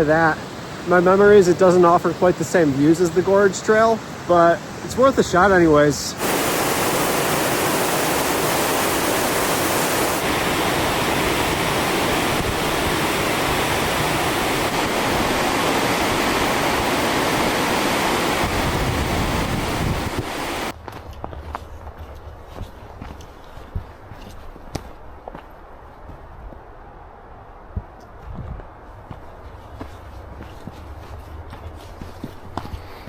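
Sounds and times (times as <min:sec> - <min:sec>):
waterfall rushing: 0:00.0 - 0:20.7.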